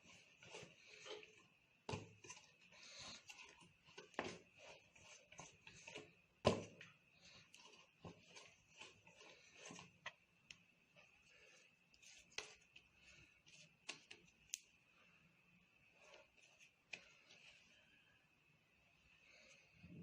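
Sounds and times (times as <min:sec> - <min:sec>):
faint sharp clicks and taps: 0:07.5 - 0:14.8.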